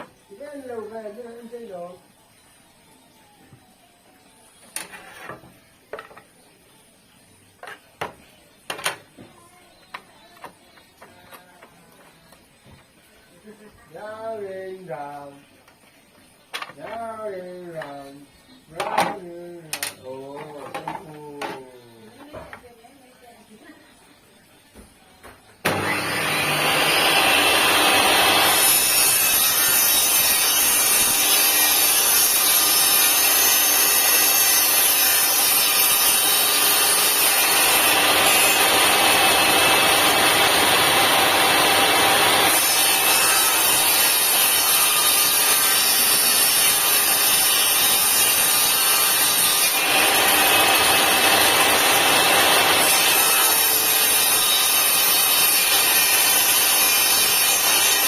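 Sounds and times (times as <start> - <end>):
table saw cutting wood: 25.6 - 58.0.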